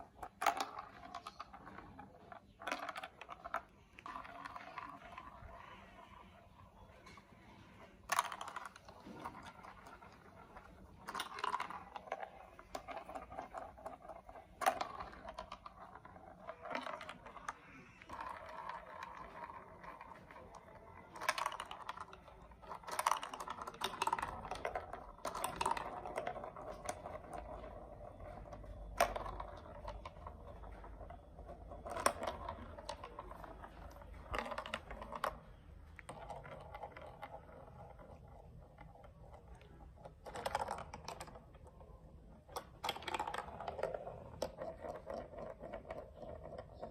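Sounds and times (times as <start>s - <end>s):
plastic blocks clicking and snapping: 7.0s - 46.9s.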